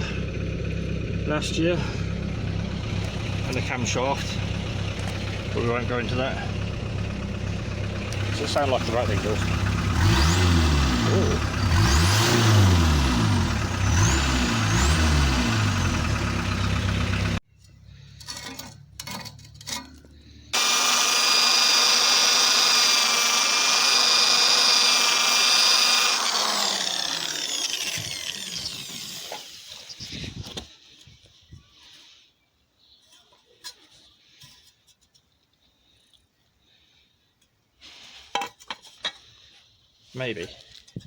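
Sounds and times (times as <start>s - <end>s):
engine revving through exhaust: 0.0s - 17.4s
power tool high whine: 8.0s - 17.4s, 20.6s - 30.0s.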